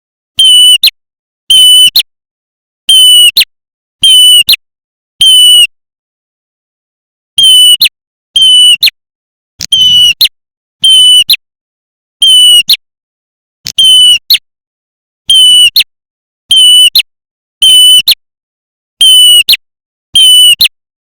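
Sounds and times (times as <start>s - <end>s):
recorded bird calls: 7.4s - 8.9s, 9.7s - 11.4s, 12.2s - 12.8s, 13.8s - 14.4s, 15.3s - 15.9s.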